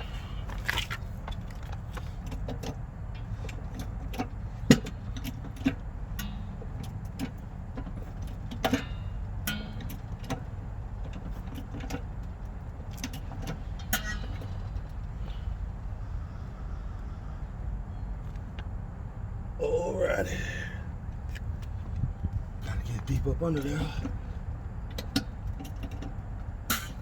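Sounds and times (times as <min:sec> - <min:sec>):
car jack metal clicks: 0:00.0 - 0:15.5, 0:24.9 - 0:27.0.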